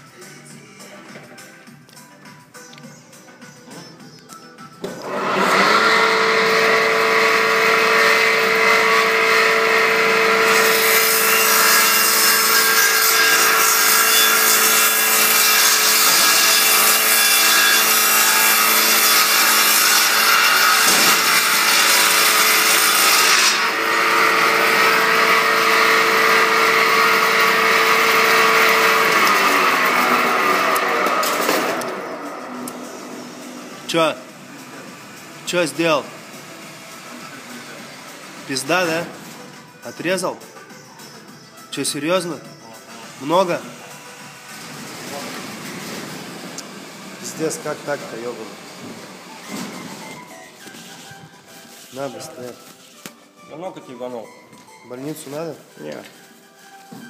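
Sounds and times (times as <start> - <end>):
machine cutting wood: 4.8 - 39.6, 41.9 - 51.0
woodworking machine running: 5.0 - 39.4, 43.1 - 50.1.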